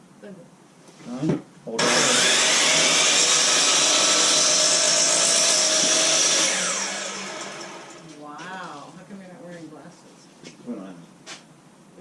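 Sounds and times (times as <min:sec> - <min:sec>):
electric power saw cutting wood: 0:01.8 - 0:08.1.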